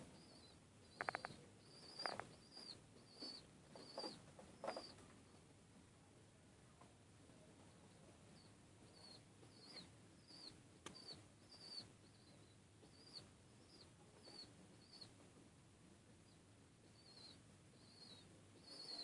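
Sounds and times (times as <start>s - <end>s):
high-pitched bird chirps: 0.2s - 5.0s, 9.0s - 15.1s, 17.0s - 19.0s
sharp click: 1.0s - 1.4s.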